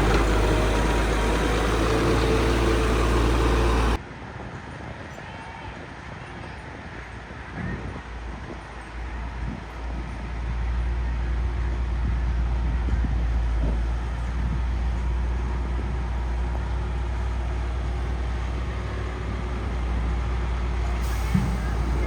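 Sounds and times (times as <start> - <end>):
heavy diesel engine rumbling: 0.0 - 4.0, 12.5 - 22.0.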